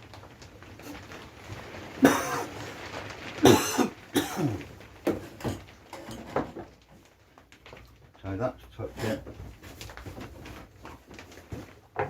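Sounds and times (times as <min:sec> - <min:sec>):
person coughing harshly: 0:02.0 - 0:02.6, 0:03.4 - 0:04.6.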